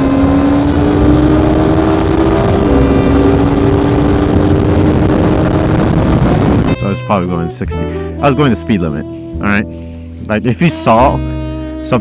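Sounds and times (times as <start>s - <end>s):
motorcycle engine running: 0.0s - 6.8s
wind rush: 0.0s - 6.8s.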